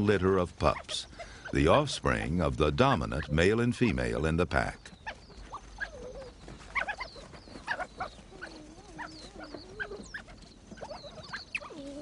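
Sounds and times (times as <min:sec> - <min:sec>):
wild dogs chirping: 0:00.0 - 0:12.0
wild dog wavering whine: 0:05.0 - 0:12.0.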